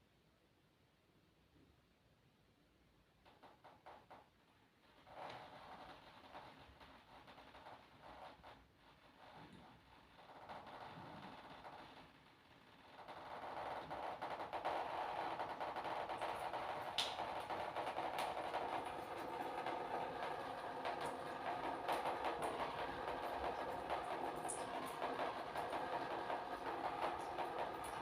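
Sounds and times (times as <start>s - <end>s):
water trickling and splashing: 16.1s - 28.0s.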